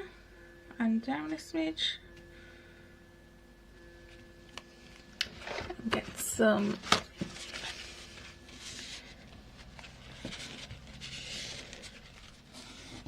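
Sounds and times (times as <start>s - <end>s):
paper rustling: 5.3s - 13.0s.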